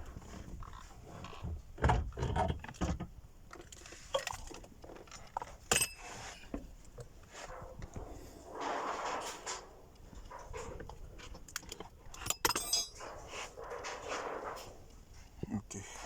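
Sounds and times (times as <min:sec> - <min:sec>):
tools and metal parts clinking: 0:03.5 - 0:06.5, 0:10.3 - 0:14.8.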